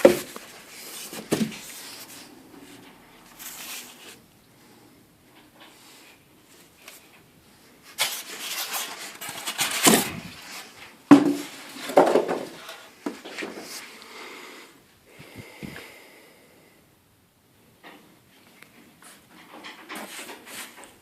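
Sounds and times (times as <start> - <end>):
knocks and bumps of parts: 0.0 - 1.8, 11.1 - 13.6
packaging rustling: 7.9 - 10.8.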